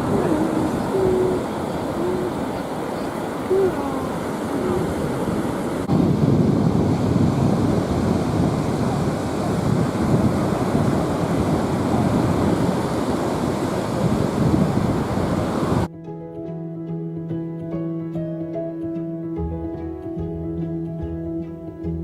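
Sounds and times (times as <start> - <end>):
ocean surf: 0.0 - 15.9
wind buffeting microphone: 0.0 - 15.9.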